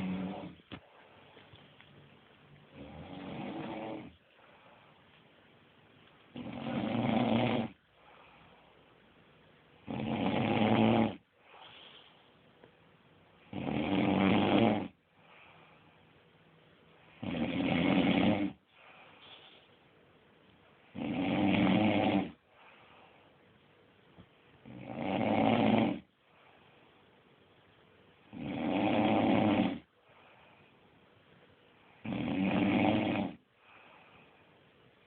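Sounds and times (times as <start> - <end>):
woman snoring: 0.0 - 0.7, 2.7 - 4.2, 6.4 - 7.8, 9.8 - 11.2, 13.5 - 15.0, 17.2 - 18.6, 20.9 - 22.4, 24.7 - 26.1, 28.3 - 29.9, 32.0 - 33.4
quiet breathing: 0.0 - 9.9, 11.1 - 13.5, 14.9 - 17.5, 18.4 - 20.9, 21.9 - 25.0, 25.9 - 28.3, 29.7 - 32.1, 33.0 - 35.0.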